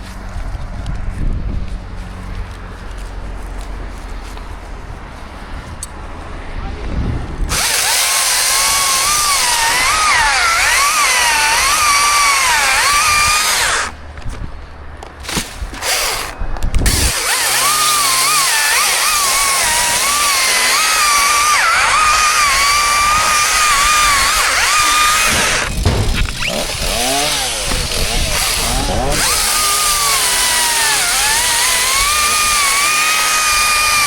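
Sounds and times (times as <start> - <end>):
chainsaw cutting wood: 7.5 - 14.0, 15.2 - 34.0.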